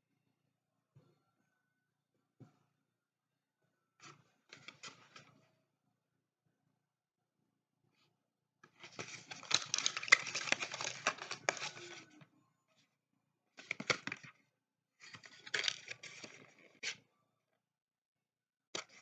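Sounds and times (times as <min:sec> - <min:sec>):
packaging crackling and clicking: 0:08.9 - 0:12.0, 0:15.1 - 0:16.4.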